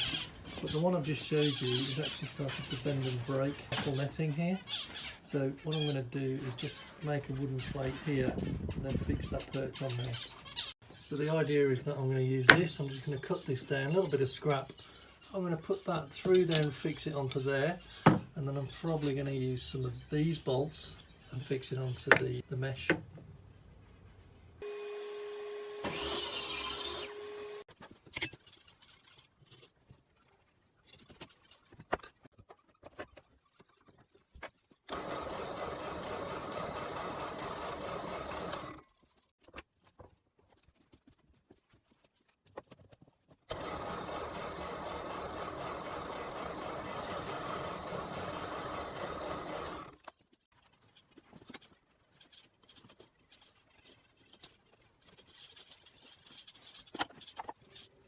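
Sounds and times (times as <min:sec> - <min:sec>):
handling knocks and clicks: 0:16.3 - 0:17.4, 0:18.0 - 0:18.4, 0:22.1 - 0:22.3
power tool on wood: 0:24.6 - 0:27.7, 0:34.9 - 0:38.8, 0:43.5 - 0:50.1.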